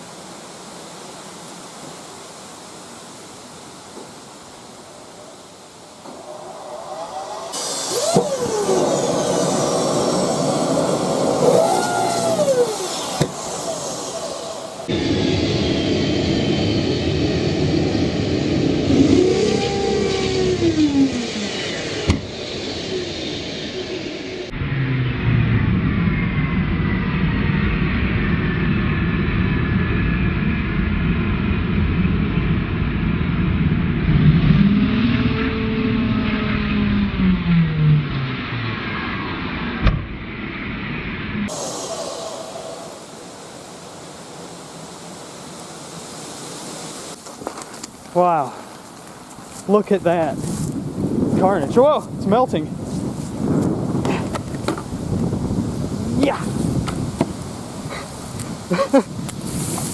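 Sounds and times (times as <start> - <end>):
rushing airflow: 5.9 - 24.6, 41.3 - 59.9
low hum rising: 6.0 - 44.8, 50.2 - 59.9
vacuum cleaner motor whining: 6.1 - 15.1, 16.1 - 22.2.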